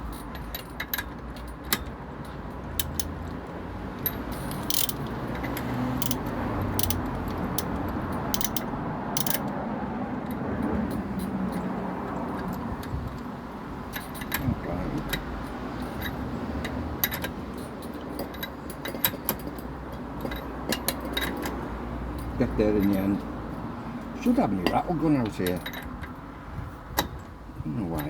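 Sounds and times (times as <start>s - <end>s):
metallic working noise: 2.8s - 3.3s, 4.0s - 9.5s
ratchet wrench clicking: 2.8s - 3.3s, 4.0s - 9.5s.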